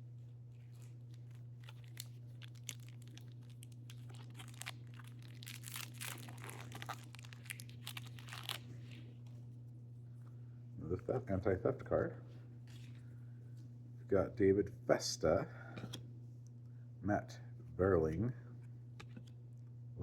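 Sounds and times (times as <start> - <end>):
steady low hum: 0.0 - 20.0
card pack wrapper tearing: 0.7 - 8.7.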